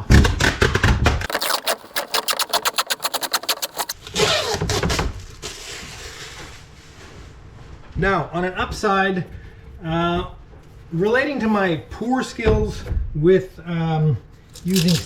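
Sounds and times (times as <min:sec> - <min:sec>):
plastic film crackling: 0:01.2 - 0:05.8, 0:14.5 - 0:15.0
plastic film rustling tear: 0:01.2 - 0:06.4, 0:14.5 - 0:15.0.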